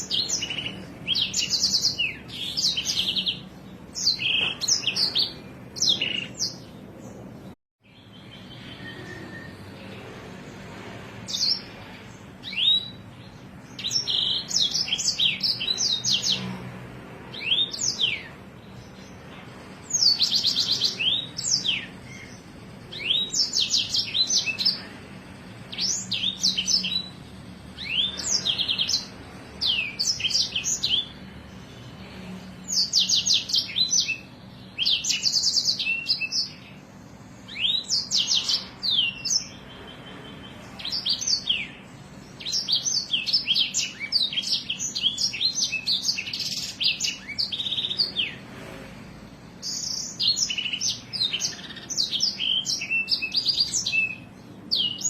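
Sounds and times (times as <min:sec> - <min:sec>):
songbird trilling and whistling: 0:00.0 - 0:06.7, 0:07.8 - 0:09.8, 0:12.4 - 0:16.4, 0:19.8 - 0:25.0, 0:25.7 - 0:31.2, 0:32.6 - 0:36.8, 0:37.4 - 0:48.4, 0:49.6 - 0:55.0.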